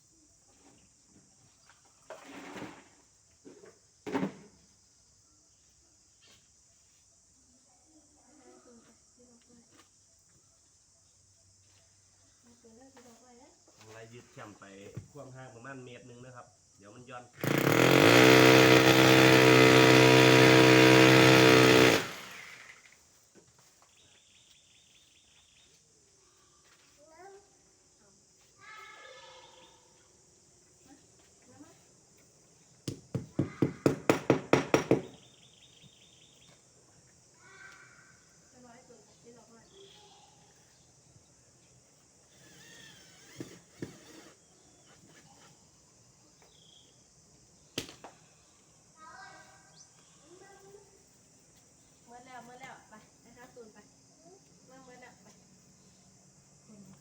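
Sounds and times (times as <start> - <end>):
power drill spinning: 17.4 - 22.9, 42.2 - 44.5
faint high chirping: 38.0 - 41.0.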